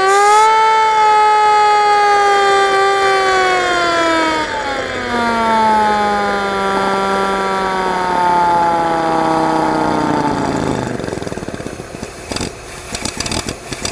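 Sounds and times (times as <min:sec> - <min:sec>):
high-pitched engine whine: 0:00.0 - 0:13.9
rough engine rattle: 0:03.2 - 0:13.9.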